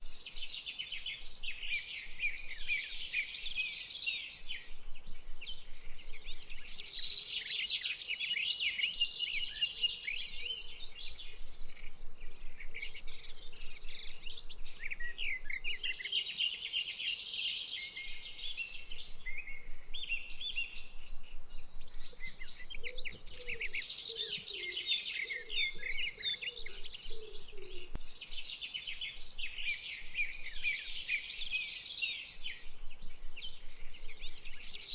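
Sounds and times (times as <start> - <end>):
songbirds chirping and trilling: 0.0 - 34.9
low bird calls: 18.0 - 34.9.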